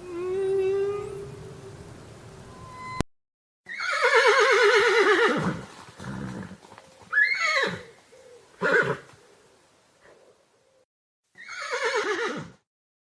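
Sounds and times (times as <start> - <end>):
horse whinnying: 3.7 - 7.9, 8.6 - 9.1, 11.4 - 12.6.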